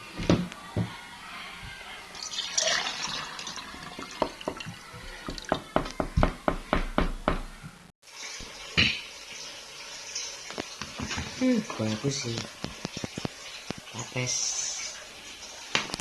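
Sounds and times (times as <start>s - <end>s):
running water splash: 2.2s - 5.6s, 8.0s - 16.0s.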